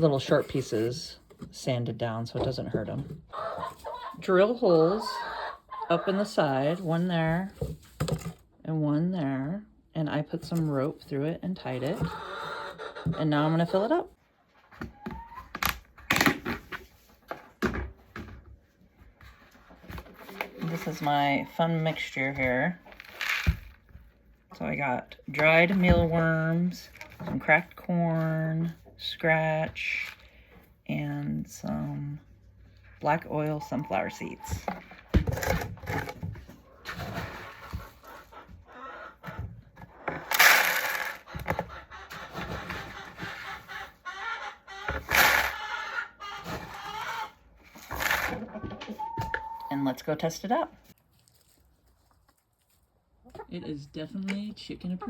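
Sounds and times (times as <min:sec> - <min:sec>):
dry grains rattling into plastic container: 0:40.3 - 0:41.2.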